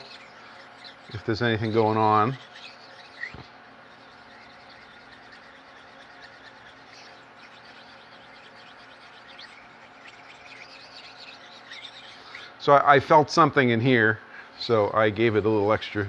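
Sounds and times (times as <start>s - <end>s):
stone scratching on steel: 0.0s - 12.4s.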